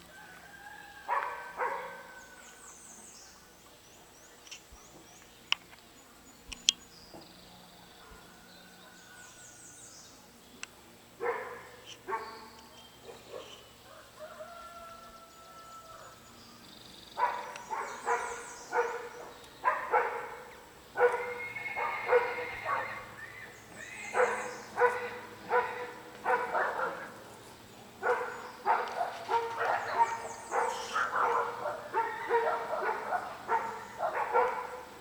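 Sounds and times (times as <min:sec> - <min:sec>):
dog barking: 0:01.1 - 0:02.3, 0:11.2 - 0:12.5, 0:13.1 - 0:14.1, 0:17.2 - 0:23.1, 0:24.1 - 0:27.2, 0:28.0 - 0:35.0.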